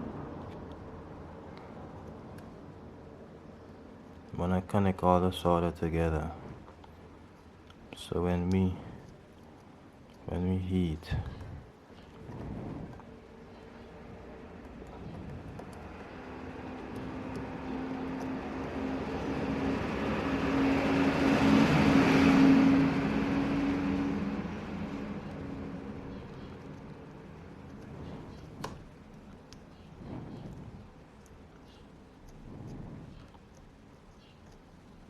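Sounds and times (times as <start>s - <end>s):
vehicle passing: 15.2s - 29.4s.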